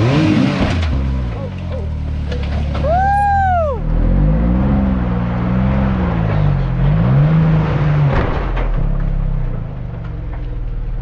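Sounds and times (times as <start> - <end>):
engine revving unevenly: 0.0 - 2.8, 3.6 - 9.6.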